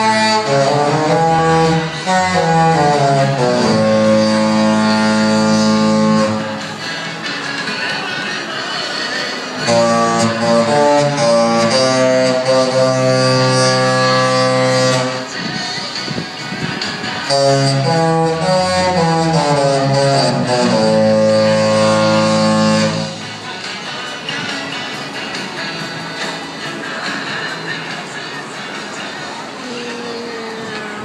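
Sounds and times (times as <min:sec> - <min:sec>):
ship horn playing a tune: 0:00.0 - 0:06.7, 0:09.6 - 0:15.3, 0:17.3 - 0:23.2.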